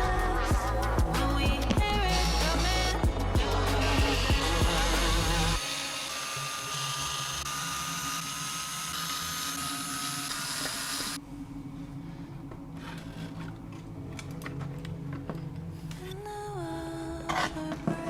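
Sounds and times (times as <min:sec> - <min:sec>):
power screwdriver motor whine: 0:04.0 - 0:11.2.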